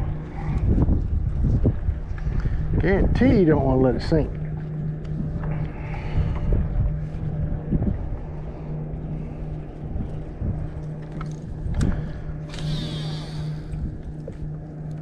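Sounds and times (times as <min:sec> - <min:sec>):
low motor hum: 0:00.0 - 0:15.0
wind rumbling on microphone: 0:00.0 - 0:15.0.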